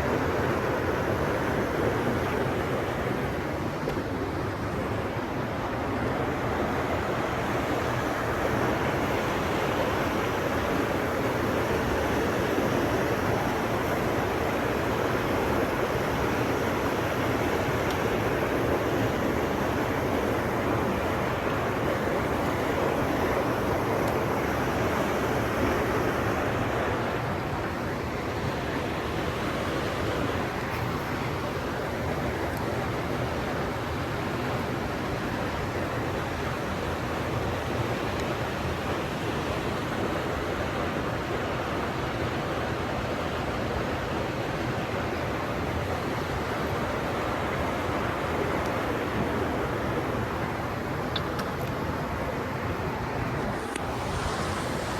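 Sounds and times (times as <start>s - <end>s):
running water of mountain stream: 0.0s - 54.9s.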